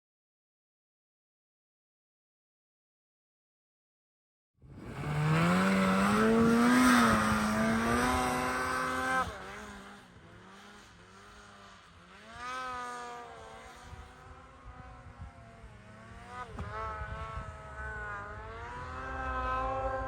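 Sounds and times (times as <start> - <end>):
snowmobile engine revving: 4.7 - 20.0.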